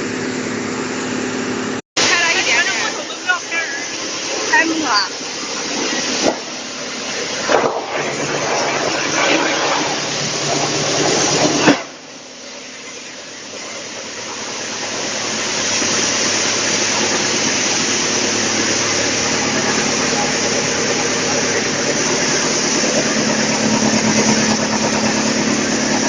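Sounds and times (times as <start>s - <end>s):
wood chipper running: 0.0s - 26.0s.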